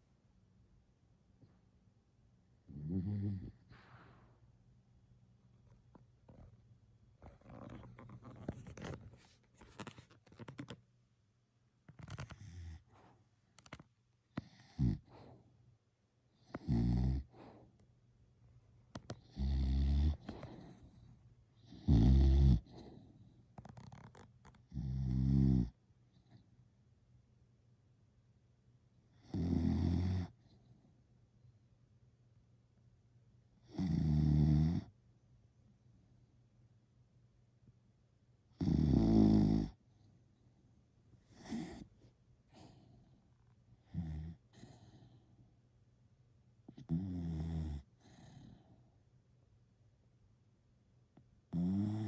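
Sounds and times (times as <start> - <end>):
loud snores: 2.7 - 3.6, 14.4 - 15.1, 16.5 - 17.3, 19.2 - 20.3, 21.7 - 22.8, 23.8 - 25.7, 29.2 - 30.3, 33.7 - 34.9, 38.6 - 39.8, 43.9 - 45.0, 46.8 - 48.6, 51.5 - 52.0
person snoring: 2.7 - 3.6, 21.7 - 22.7, 51.6 - 52.0
soft breathing: 3.5 - 4.6, 14.4 - 15.6, 17.2 - 17.9, 20.1 - 21.3, 40.0 - 43.6, 44.3 - 45.6.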